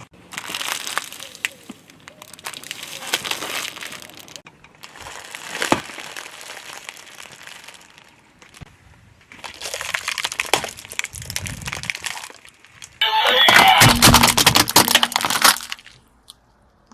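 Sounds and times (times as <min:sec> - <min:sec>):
objects crushed under car tyre: 0:00.1 - 0:08.6, 0:09.3 - 0:16.0.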